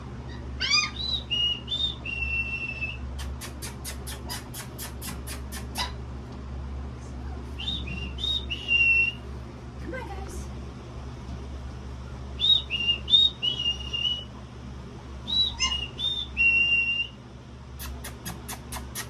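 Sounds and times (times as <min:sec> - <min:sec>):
person whistling: 0:07.6 - 0:09.1.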